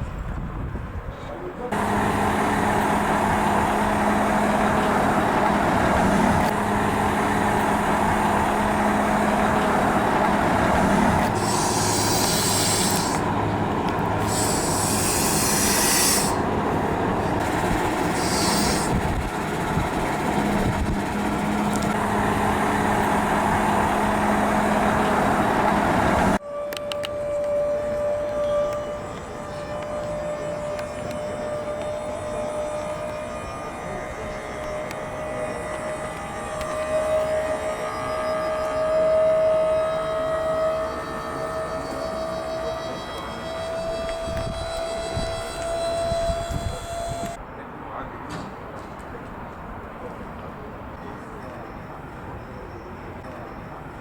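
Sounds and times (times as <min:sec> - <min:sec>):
diesel engine running: 0:01.7 - 0:26.4, 0:27.2 - 0:47.4
bursts of hissing: 0:11.3 - 0:13.3, 0:14.2 - 0:16.5, 0:17.4 - 0:19.1.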